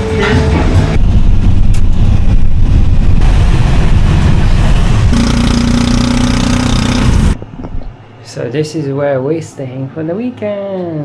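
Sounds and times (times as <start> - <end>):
vehicle engine and road noise: 0.0 - 7.8.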